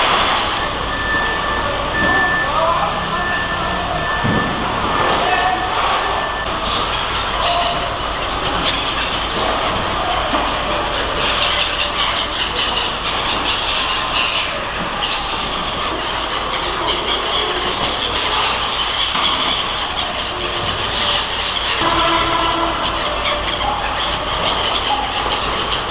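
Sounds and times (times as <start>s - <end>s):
machinery rumble: 0.0s - 25.9s
dense clattering: 6.4s - 25.9s.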